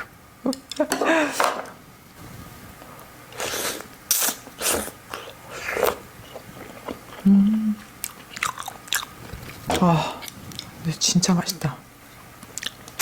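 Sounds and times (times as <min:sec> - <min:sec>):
person chewing: 0:03.3 - 0:10.8, 0:12.4 - 0:13.0
person humming: 0:07.2 - 0:07.9, 0:09.7 - 0:10.3.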